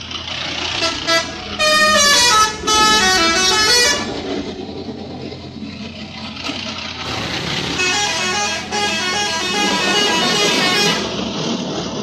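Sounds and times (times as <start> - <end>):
multi-tone musical horn: 7.8 - 11.1.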